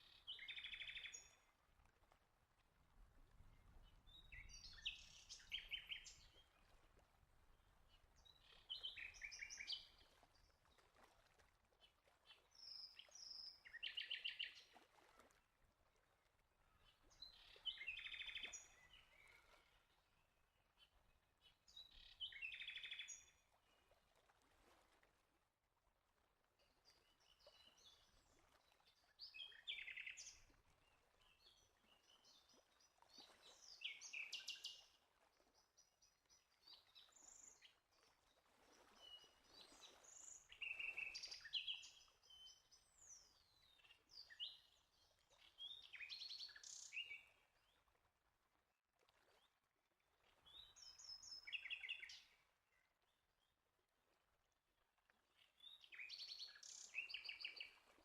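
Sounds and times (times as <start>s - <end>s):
songbird chirping: 4.0s - 6.5s.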